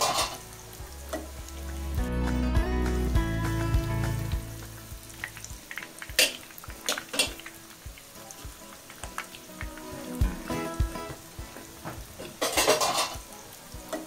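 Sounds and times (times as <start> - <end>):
food deep-frying in hot oil: 0.0 - 14.0
oil popping and clicking: 3.8 - 14.0.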